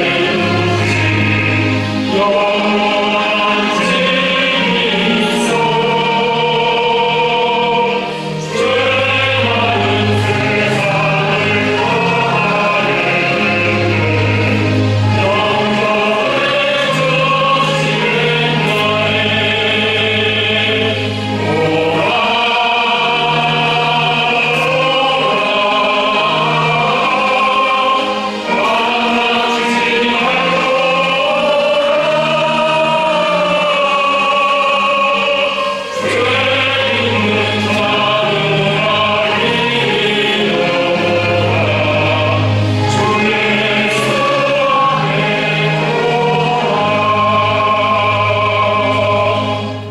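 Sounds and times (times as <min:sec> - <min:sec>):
choir singing a hymn: 0:00.0 - 0:49.9
orchestral accompaniment: 0:00.0 - 0:49.9.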